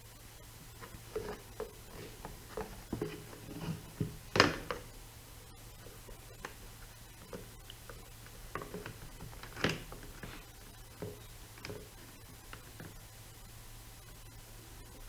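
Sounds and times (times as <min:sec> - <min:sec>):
faint steady hum: 0:00.0 - 0:15.0
hands clicking and tapping plastic: 0:00.6 - 0:04.9, 0:05.8 - 0:13.0.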